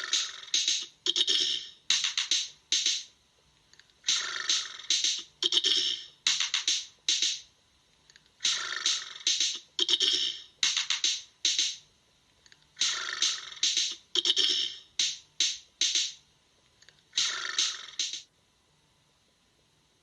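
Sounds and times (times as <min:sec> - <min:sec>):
percussive ringtone: 0:00.0 - 0:03.0, 0:04.5 - 0:07.3, 0:08.5 - 0:11.8, 0:12.8 - 0:15.1.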